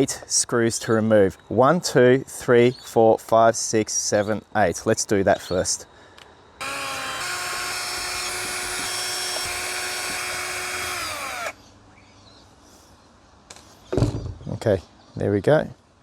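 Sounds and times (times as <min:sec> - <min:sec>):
power drill whining: 0:06.6 - 0:11.6.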